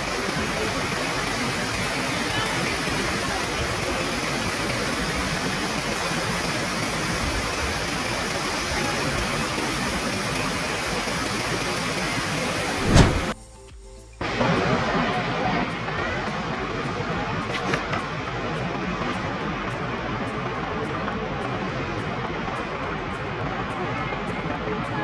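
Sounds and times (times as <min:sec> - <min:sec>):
rushing waterfall: 0:00.0 - 0:13.4
loud thump: 0:12.8 - 0:13.4.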